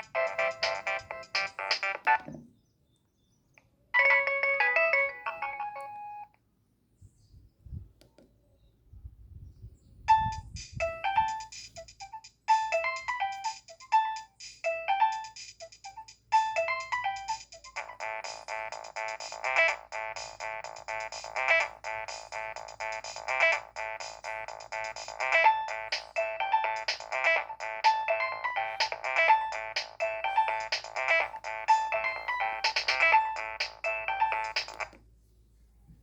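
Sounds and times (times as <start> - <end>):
phone ringtone melodies: 0.0 - 2.4, 4.0 - 6.3, 10.1 - 34.9.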